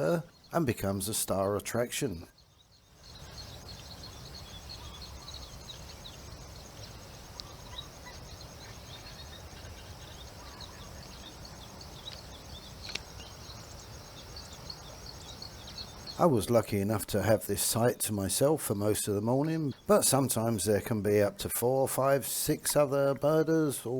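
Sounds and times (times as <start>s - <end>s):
small birds chirping: 0.0s - 23.9s
high insect buzz: 2.8s - 16.2s.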